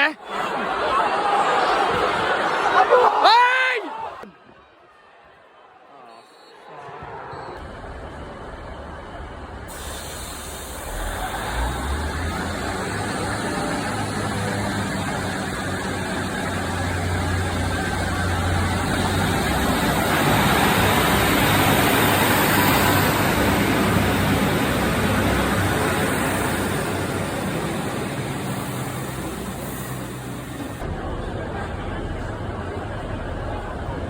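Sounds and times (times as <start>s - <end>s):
diesel train passing: 7.6s - 34.0s.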